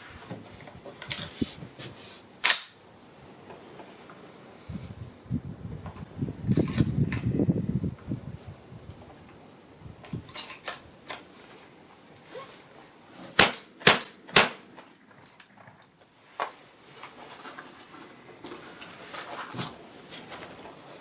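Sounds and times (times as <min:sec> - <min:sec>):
shotgun shots: 0:13.4 - 0:14.8.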